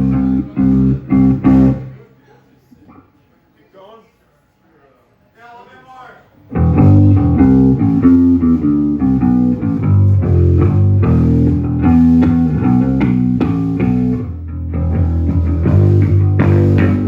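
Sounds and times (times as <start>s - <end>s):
electric bass guitar playing: 0.0s - 1.9s, 6.5s - 17.0s.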